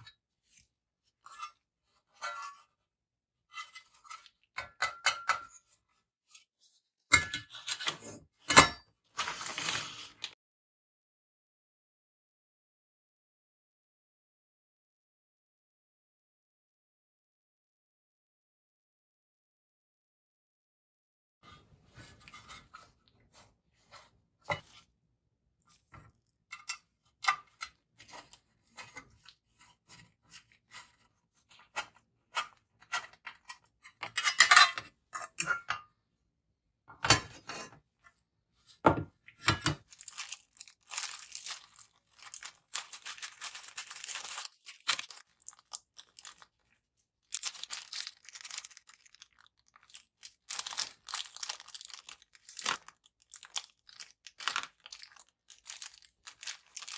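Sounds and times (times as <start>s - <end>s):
plastic rustling: 39.8s - 56.9s.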